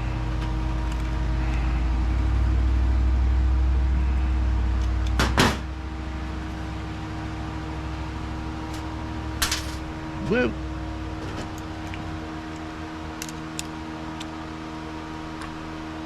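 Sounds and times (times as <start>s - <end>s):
steady hum: 0.0s - 16.0s
vehicle engine rumble: 0.0s - 16.0s
sharp metal clanks: 9.4s - 9.8s.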